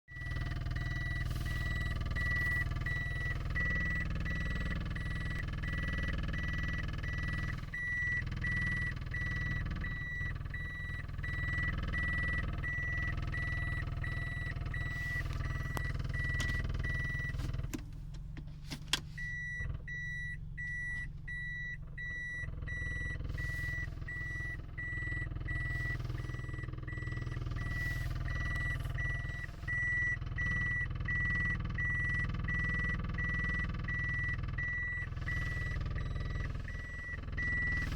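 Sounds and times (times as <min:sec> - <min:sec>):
car engine rumbling: 0:00.0 - 0:37.9
electronic beeping: 0:19.2 - 0:37.9.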